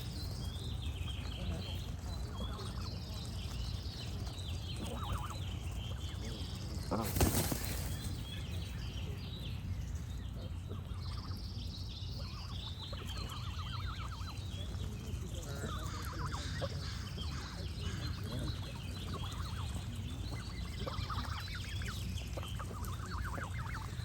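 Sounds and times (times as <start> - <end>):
songbirds chirping: 0.0 - 24.0
geese honking: 20.5 - 24.0.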